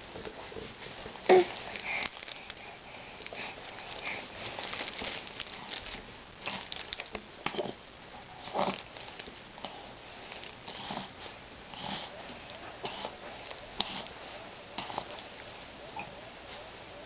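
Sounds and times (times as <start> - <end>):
baby snuffly breathing: 11.7 - 12.2, 12.8 - 14.2, 14.8 - 15.2.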